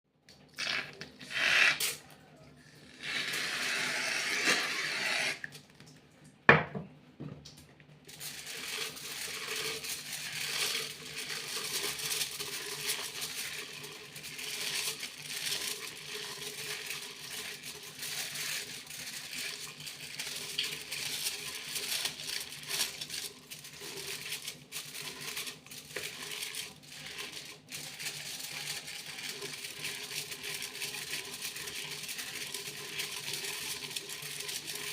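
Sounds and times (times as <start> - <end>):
foil crinkling: 8.1 - 34.9.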